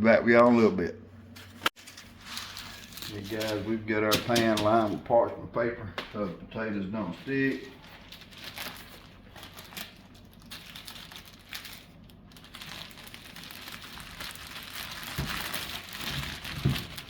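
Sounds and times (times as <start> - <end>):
packaging crinkling: 1.8 - 3.7, 7.4 - 17.0.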